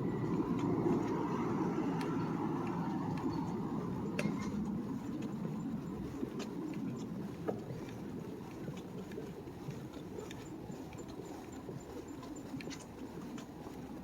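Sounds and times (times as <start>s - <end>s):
low traffic rumble: 0.0s - 10.7s
light clicks and taps: 2.0s - 11.2s, 12.1s - 13.6s.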